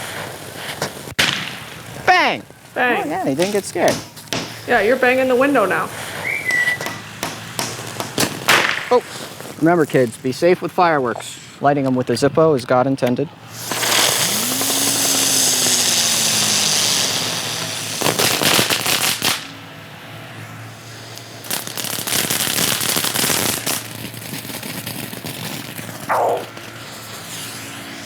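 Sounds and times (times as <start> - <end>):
firework hiss: 0.0 - 10.6, 13.4 - 28.0
fireworks crackling pops: 0.0 - 12.0, 13.0 - 19.8, 20.5 - 28.0
falling whistle: 6.1 - 7.0.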